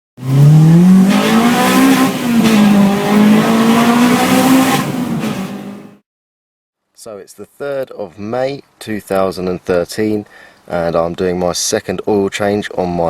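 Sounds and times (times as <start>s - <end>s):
car engine revving hard: 0.2s - 6.0s.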